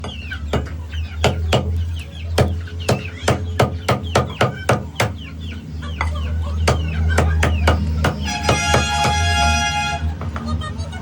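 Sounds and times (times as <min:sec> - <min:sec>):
chickens clucking: 0:00.0 - 0:11.0
blade chopping meat: 0:06.7 - 0:09.2.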